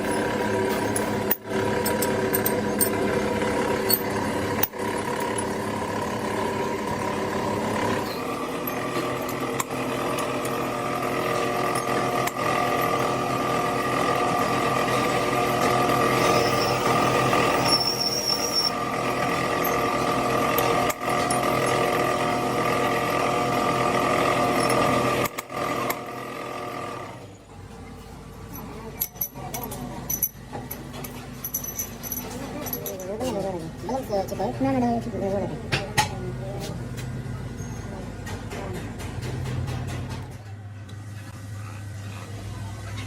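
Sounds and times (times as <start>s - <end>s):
motor whining: 0.0s - 27.2s.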